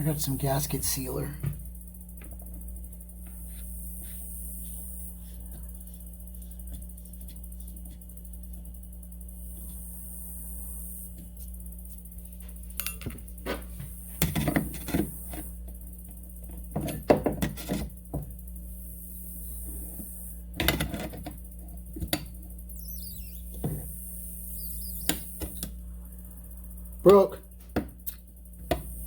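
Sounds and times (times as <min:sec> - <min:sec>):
faint high squeak: 0:22.7 - 0:25.6.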